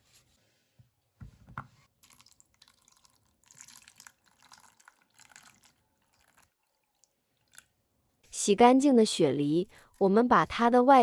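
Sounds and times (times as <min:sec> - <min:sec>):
water dripping and splashing: 0:02.0 - 0:07.7.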